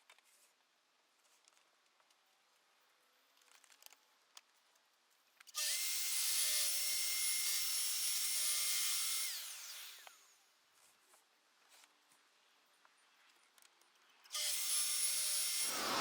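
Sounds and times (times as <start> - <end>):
circular saw whine: 15.2 - 16.0.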